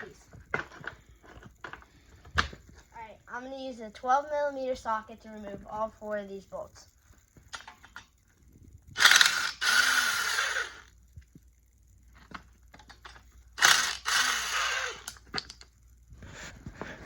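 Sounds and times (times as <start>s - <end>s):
ratchet turning bolts: 9.0s - 10.9s, 12.7s - 15.7s.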